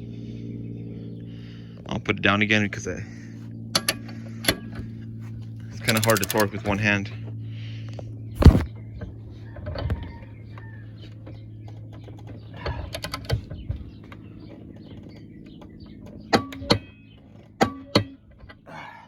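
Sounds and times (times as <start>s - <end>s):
tools clicking and knocking: 5.8s - 6.8s.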